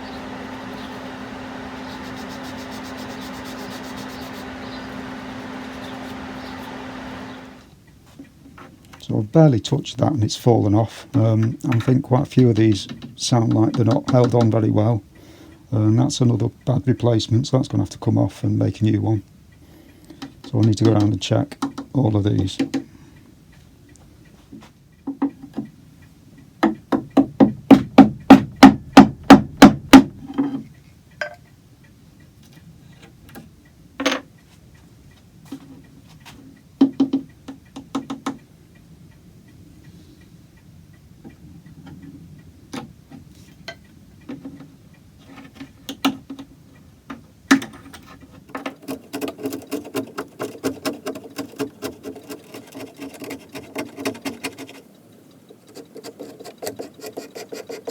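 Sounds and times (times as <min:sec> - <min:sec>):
knocking on wooden blocks: 0:26.6 - 0:30.6.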